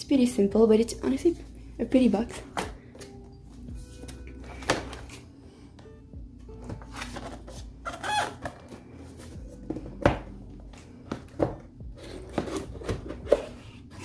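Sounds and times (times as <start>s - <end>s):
squeaky rubbing: 7.8s - 8.4s.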